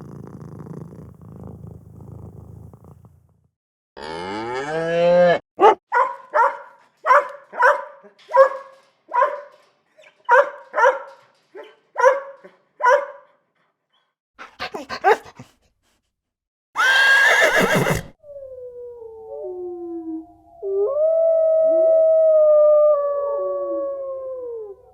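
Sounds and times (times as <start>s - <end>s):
dog barking: 5.6s - 9.6s, 10.3s - 13.4s
horse neighing: 16.8s - 18.2s
falling howl: 18.3s - 24.9s.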